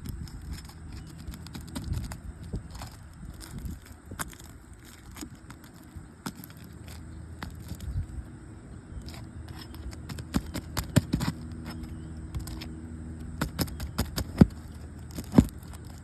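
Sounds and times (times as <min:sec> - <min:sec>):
faint steady hum: 0:00.0 - 0:16.0
roof shingles being torn off: 0:13.3 - 0:16.0.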